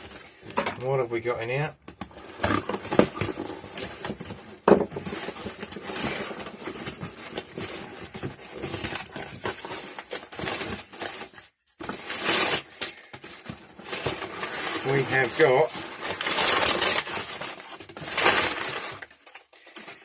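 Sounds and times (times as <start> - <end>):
paper rustling and crinkling: 2.0 - 20.0.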